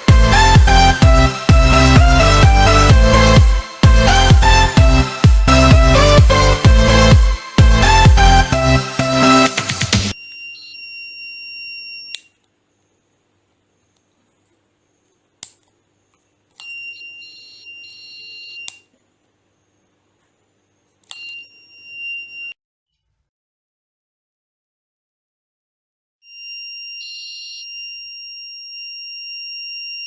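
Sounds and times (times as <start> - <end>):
high-pitched buzzer tone: 10.1 - 12.3, 16.6 - 18.8, 21.1 - 22.6, 26.2 - 30.0.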